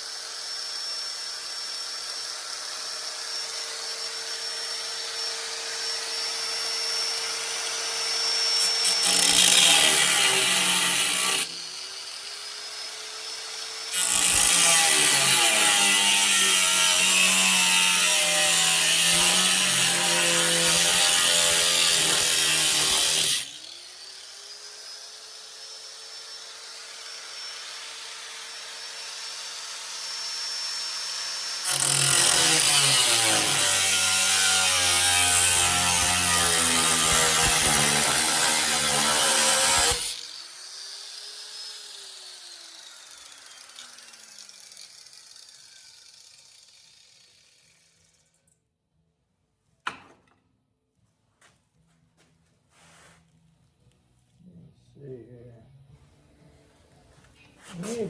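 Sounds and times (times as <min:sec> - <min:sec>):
power tool motor whining: 0:00.0 - 0:48.2
power tool cutting metal: 0:00.0 - 0:48.3.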